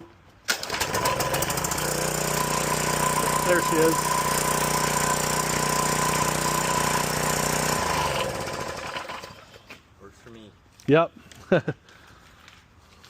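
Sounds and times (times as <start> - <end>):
small engine running: 0.6 - 9.6.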